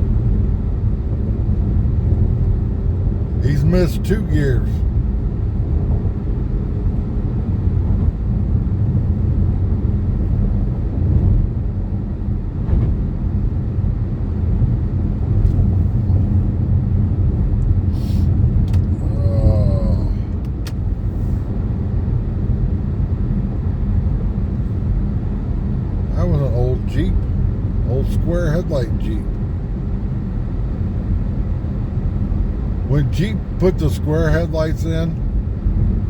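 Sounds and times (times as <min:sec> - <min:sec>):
car engine and road noise: 0:00.0 - 0:36.0.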